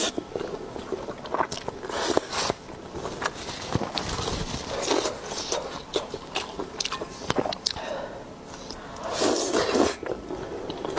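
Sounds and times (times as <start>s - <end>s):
chewing with mouth clicks: 0.1s - 2.3s, 3.1s - 7.8s
crunchy slurping bursts: 9.0s - 10.1s.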